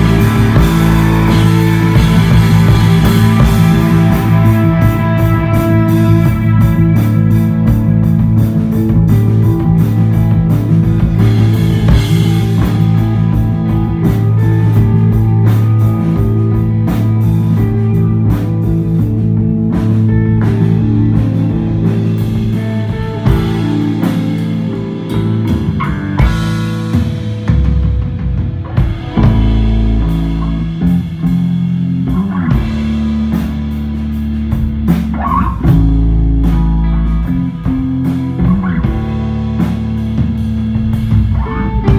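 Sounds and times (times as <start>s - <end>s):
bass guitar: 0.0s - 41.9s
drum kit with ringing cymbals: 0.0s - 41.9s
electric guitar: 0.0s - 41.9s.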